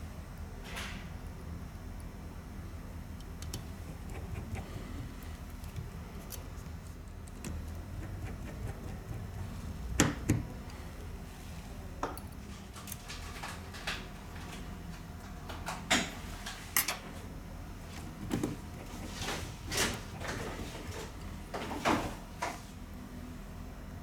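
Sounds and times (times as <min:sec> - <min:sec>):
low steady hum: 0:00.0 - 0:13.1.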